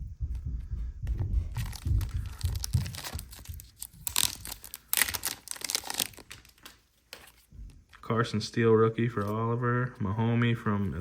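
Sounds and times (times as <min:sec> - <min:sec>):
packaging crinkling and rustling: 0:01.4 - 0:07.5.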